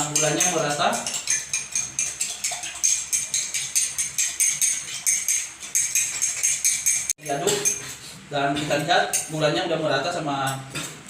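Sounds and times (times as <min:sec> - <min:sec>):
spoon clinking against glass: 0:00.0 - 0:07.9.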